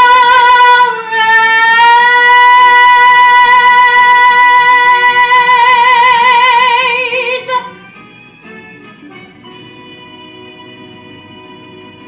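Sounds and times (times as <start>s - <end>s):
woman singing a long belted note: 0.0s - 7.8s
instrumental backing track: 7.0s - 12.0s.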